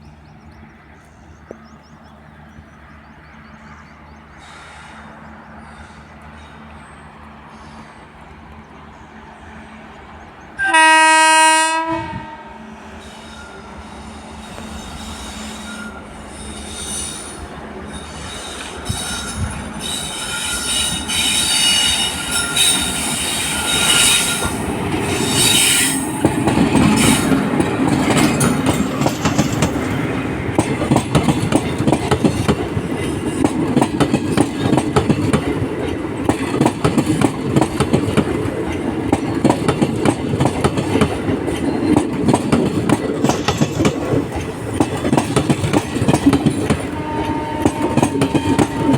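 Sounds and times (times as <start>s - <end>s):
heavy train rumble: 0.0s - 48.9s
train wheel squeal: 4.4s - 8.2s, 12.8s - 35.3s, 43.2s - 48.9s
train wheels clickety-clack: 13.0s - 48.9s.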